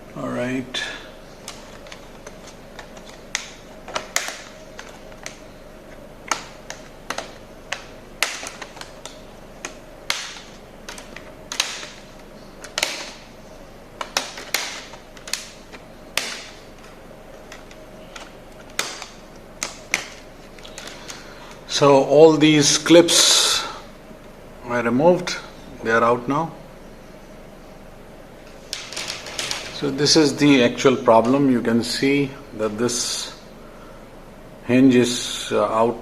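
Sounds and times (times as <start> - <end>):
faint steady hum: 0.0 - 36.0
plastic clips clicking and snapping: 1.4 - 5.4, 6.2 - 13.2, 14.0 - 21.2.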